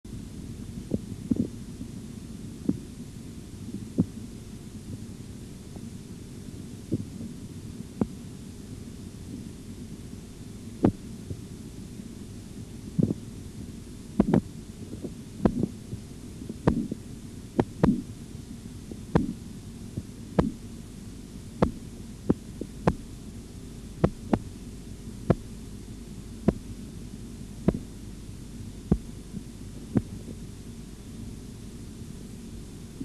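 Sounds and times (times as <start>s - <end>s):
steady low hum: 0.0s - 33.0s
heartbeat taps through stethoscope: 0.9s - 1.5s, 4.0s - 4.2s, 10.8s - 11.4s, 14.2s - 16.0s, 16.6s - 17.0s, 17.6s - 18.1s, 19.2s - 19.4s, 20.0s - 20.6s, 21.6s - 23.0s, 24.0s - 24.5s, 25.3s - 25.5s, 26.4s - 26.7s, 27.7s - 27.9s, 28.9s - 30.4s.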